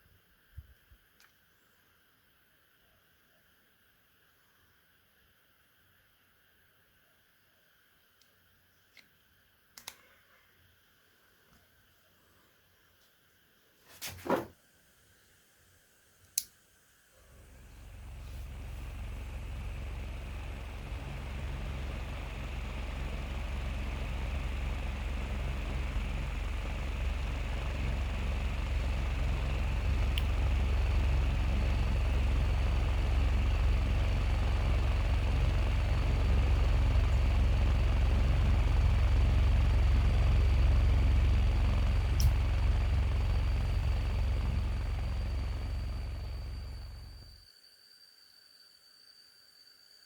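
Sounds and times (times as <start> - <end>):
thin high whine: 17.1 - 50.0
small motor humming: 17.3 - 47.5.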